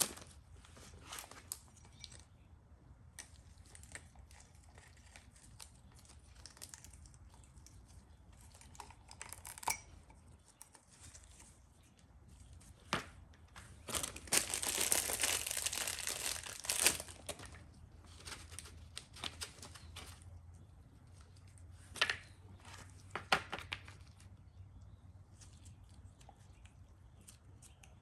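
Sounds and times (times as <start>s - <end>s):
faint low hum: 0.0s - 28.0s
plastic packaging crinkling: 13.6s - 20.2s.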